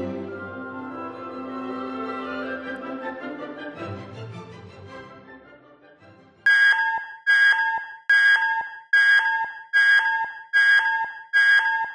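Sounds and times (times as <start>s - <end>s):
music: 0.0s - 6.5s
fire alarm two-note signal: 6.5s - 11.9s.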